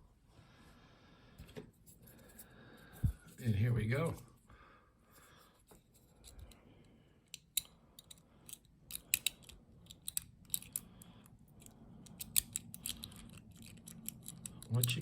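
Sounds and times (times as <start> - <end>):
lock pick clicking and scraping: 5.9 - 6.6, 7.2 - 15.0.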